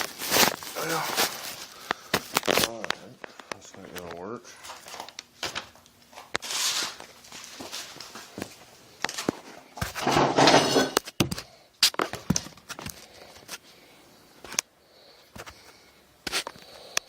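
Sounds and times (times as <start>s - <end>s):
scraping rustle: 6.4s - 8.2s, 9.9s - 11.0s.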